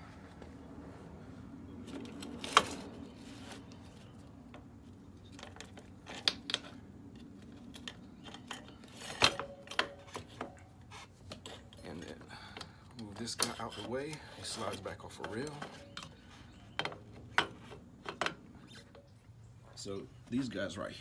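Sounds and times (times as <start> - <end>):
metal clinks and clanks: 11.3 - 14.0.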